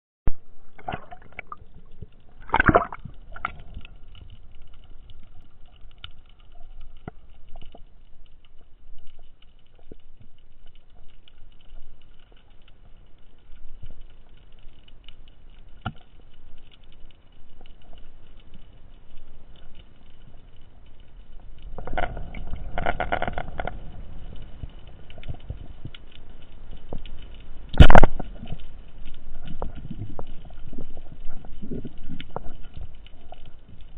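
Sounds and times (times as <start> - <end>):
underwater clicks and knocks: 0.3 - 11.9, 13.8 - 16.9, 21.6 - 33.9
gurgling water: 0.3 - 33.9.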